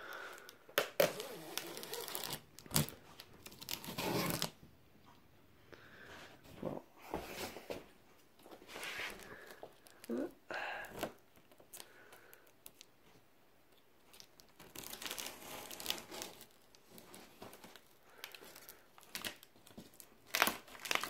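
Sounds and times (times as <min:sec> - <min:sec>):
cardboard tearing and crinkling: 0:00.8 - 0:04.6, 0:14.1 - 0:21.0.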